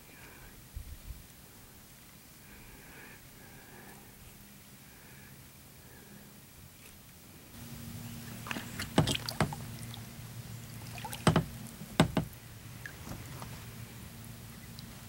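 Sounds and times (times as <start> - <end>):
low steady hum: 0.0 - 15.0
paddle working water: 7.6 - 15.0
paddle knocking against kayak: 8.3 - 10.0, 10.7 - 13.3.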